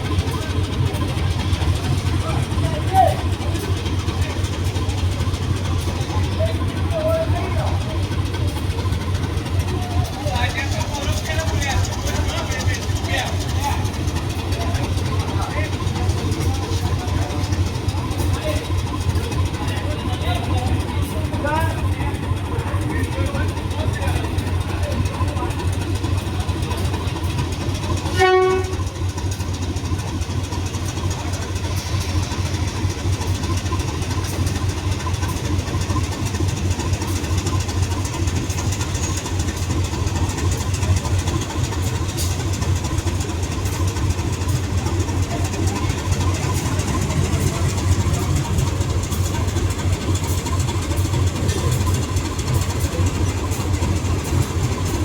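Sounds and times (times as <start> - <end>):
diesel locomotive engine droning: 0.0 - 55.0
locomotive horn blast: 28.0 - 29.0.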